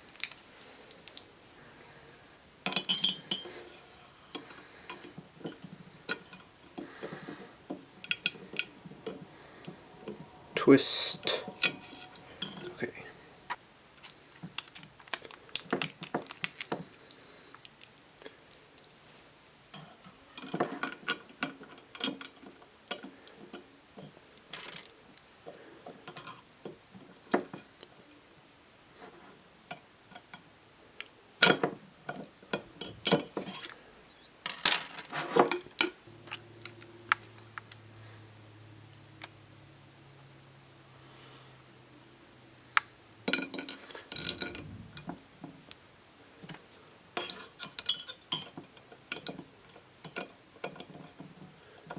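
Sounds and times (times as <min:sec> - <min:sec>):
faint low hum: 0:05.8 - 0:14.8, 0:36.0 - 0:43.4.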